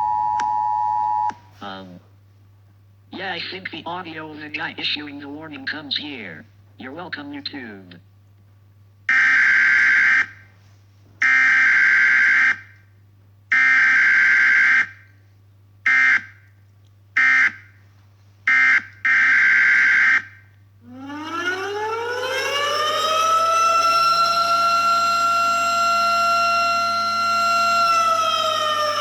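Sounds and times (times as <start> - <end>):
tornado warning siren wailing: 0.0 - 1.4, 9.1 - 10.5, 11.2 - 12.8, 13.5 - 15.0, 15.9 - 16.3, 17.2 - 17.6, 18.5 - 29.0
electronic alarm beeps: 0.0 - 1.5.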